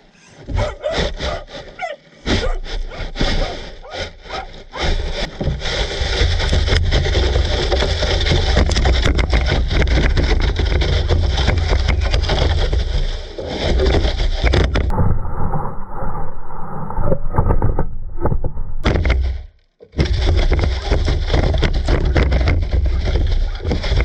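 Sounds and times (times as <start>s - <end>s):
sled scraping over grass: 0.0s - 15.0s, 19.0s - 24.0s
small knocks and clatters: 4.4s - 14.9s, 18.8s - 24.0s.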